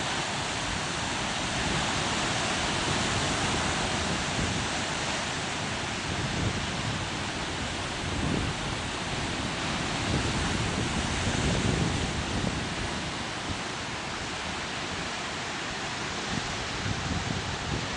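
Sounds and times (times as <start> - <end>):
ocean surf rushing: 0.0 - 17.9
wind buffeting microphone: 0.4 - 17.9.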